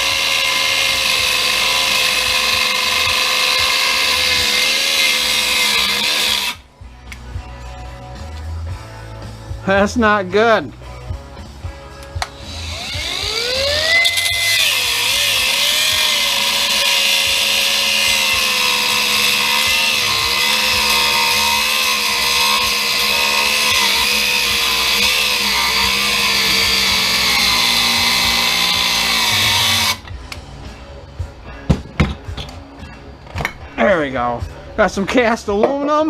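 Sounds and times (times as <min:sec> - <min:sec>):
electric cutting tool cutting metal: 0:00.0 - 0:06.6, 0:12.1 - 0:30.2.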